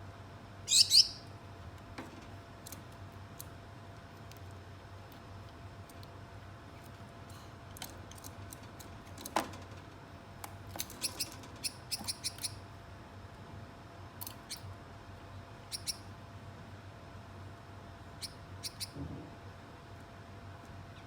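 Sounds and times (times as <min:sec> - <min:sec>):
finches chirping: 0:00.7 - 0:01.3, 0:11.0 - 0:12.6, 0:15.7 - 0:16.1, 0:18.2 - 0:19.0.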